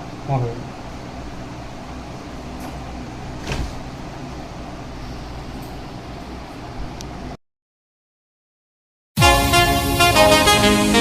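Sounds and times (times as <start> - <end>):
low background hum: 0.0 - 7.4.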